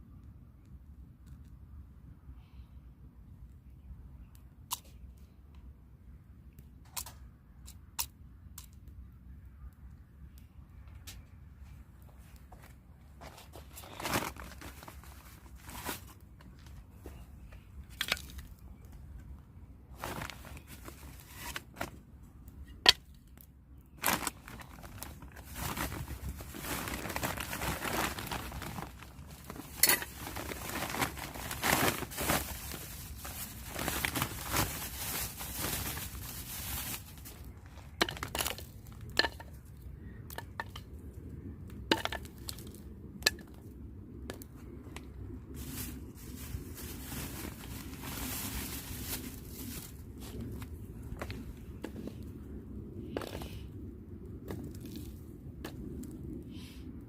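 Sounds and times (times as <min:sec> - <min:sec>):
crinkling and rustling: 0:10.9 - 0:40.9, 0:44.3 - 0:52.3.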